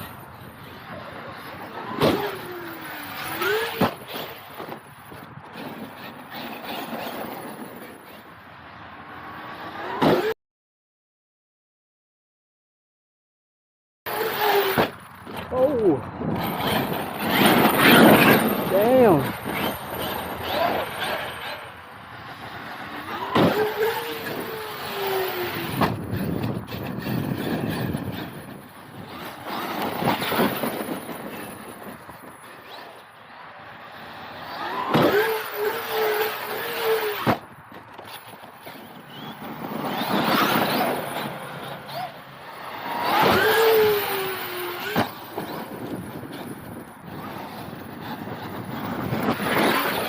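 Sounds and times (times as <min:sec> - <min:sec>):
tyre and dirt noise: 0:00.0 - 0:10.4, 0:14.1 - 0:50.0
electric motor whining: 0:38.8 - 0:46.0.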